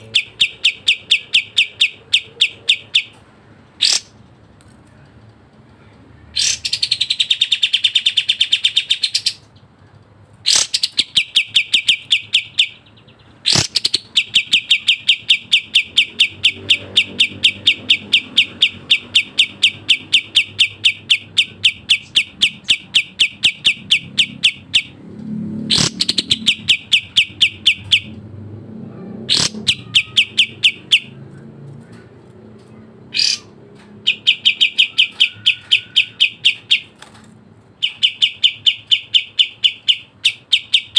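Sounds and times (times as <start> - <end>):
bulbul singing rapid trills: 0.0 - 3.2, 3.8 - 4.2, 10.5 - 28.2, 29.3 - 32.1, 33.1 - 40.9.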